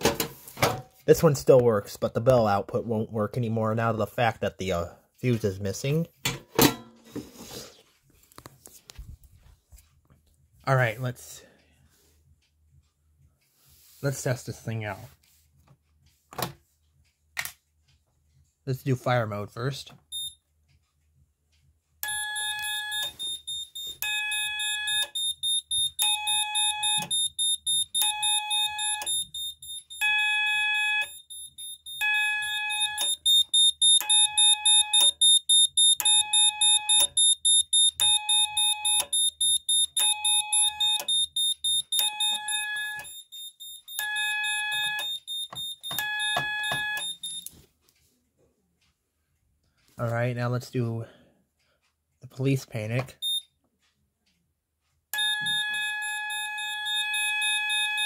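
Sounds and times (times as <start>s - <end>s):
alarm pulsed beeps: 20.1s - 20.4s, 22.0s - 47.5s, 53.2s - 53.5s, 55.2s - 58.0s.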